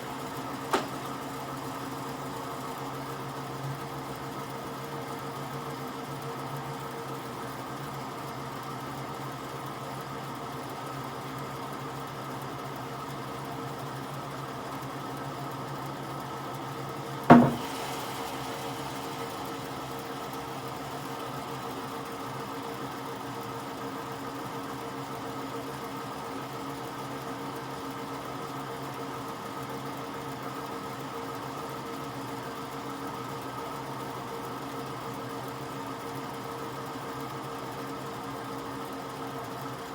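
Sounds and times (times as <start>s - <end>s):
machine motor humming: 0.2s - 1.8s
sharp knock: 0.7s - 1.2s, 17.3s - 17.8s.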